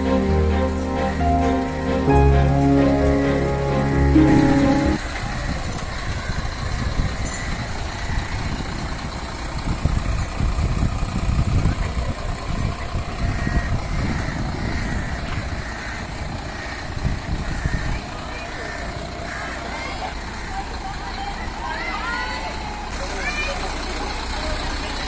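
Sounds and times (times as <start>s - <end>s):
background music: 0.0s - 5.0s
lorry engines idling: 0.0s - 5.0s, 18.8s - 25.0s.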